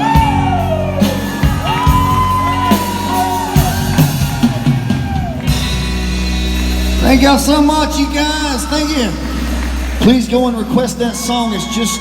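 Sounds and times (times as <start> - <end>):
bass notes: 0.0 - 11.6
country band playing: 0.0 - 12.0.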